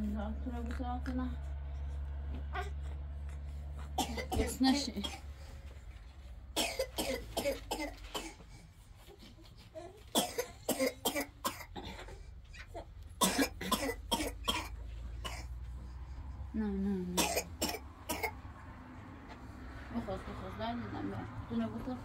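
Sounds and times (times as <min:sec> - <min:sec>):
woman coughing hard: 0:04.0 - 0:05.2, 0:06.6 - 0:08.4, 0:10.1 - 0:12.1, 0:13.2 - 0:15.6, 0:17.2 - 0:18.4.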